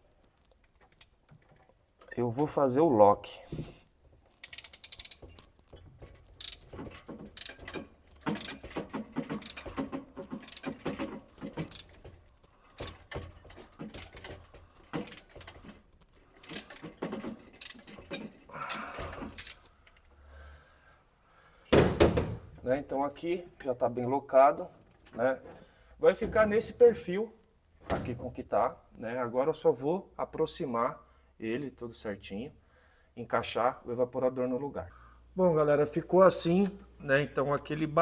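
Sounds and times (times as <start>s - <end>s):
metallic tool clicks and clatter: 4.3s - 20.0s.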